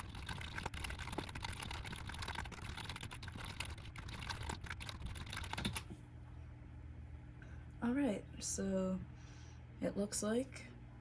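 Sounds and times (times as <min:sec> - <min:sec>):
fast typing on computer keyboard: 0:00.0 - 0:05.9.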